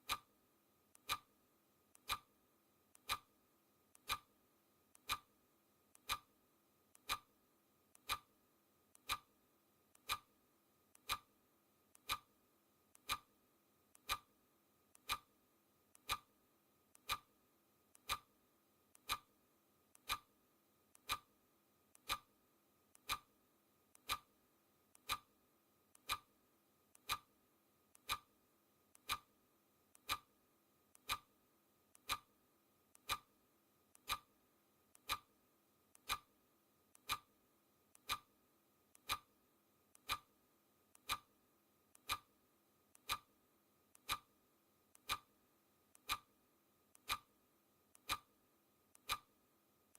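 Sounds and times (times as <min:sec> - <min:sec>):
clock ticking: 0:00.0 - 0:00.3, 0:00.9 - 0:01.3, 0:01.9 - 0:02.3, 0:02.9 - 0:03.3, 0:03.9 - 0:04.3, 0:04.9 - 0:05.3, 0:05.9 - 0:06.3, 0:06.9 - 0:07.3, 0:07.9 - 0:08.3, 0:08.9 - 0:09.3, 0:09.9 - 0:10.3, 0:10.9 - 0:11.3, 0:11.9 - 0:12.3, 0:12.9 - 0:13.3, 0:13.9 - 0:14.3, 0:14.9 - 0:15.3, 0:15.9 - 0:16.3, 0:16.9 - 0:17.3, 0:17.9 - 0:18.3, 0:18.9 - 0:19.3, 0:19.9 - 0:20.3, 0:20.9 - 0:21.3, 0:21.9 - 0:22.3, 0:22.9 - 0:23.3, 0:23.9 - 0:24.3, 0:24.9 - 0:25.3, 0:25.9 - 0:26.3, 0:26.9 - 0:27.3, 0:27.9 - 0:28.3, 0:28.9 - 0:29.3, 0:29.9 - 0:30.3, 0:30.9 - 0:31.3, 0:31.9 - 0:32.3, 0:32.9 - 0:33.3, 0:33.9 - 0:36.3, 0:36.9 - 0:37.3, 0:37.9 - 0:38.3, 0:38.9 - 0:40.3, 0:40.9 - 0:41.3, 0:41.9 - 0:42.3, 0:42.9 - 0:43.3, 0:43.9 - 0:44.3, 0:44.9 - 0:45.3, 0:45.9 - 0:49.3.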